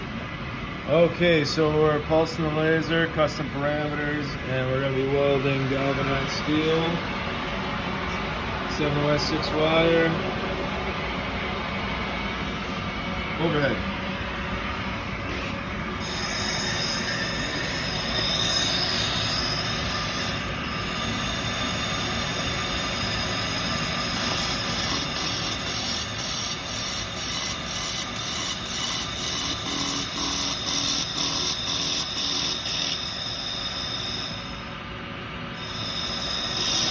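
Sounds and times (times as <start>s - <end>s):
laser welder pulsing whine: 12.9s - 36.9s.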